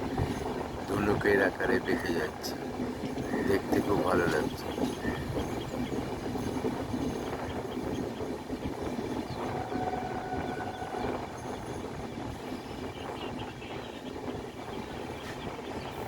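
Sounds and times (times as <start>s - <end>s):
train wheels rumbling on rails: 0.0s - 16.0s
faint high wheel squeal: 3.2s - 8.1s, 8.9s - 13.5s.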